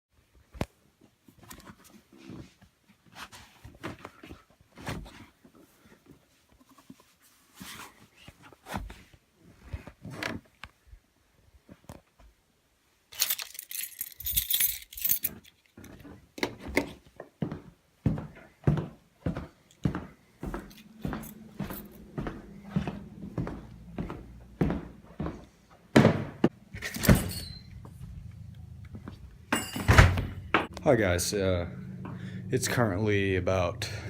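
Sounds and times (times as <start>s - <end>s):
knocks and rustles of handling: 0.4s - 10.8s
bright high jingling: 26.9s - 28.0s, 29.5s - 30.5s.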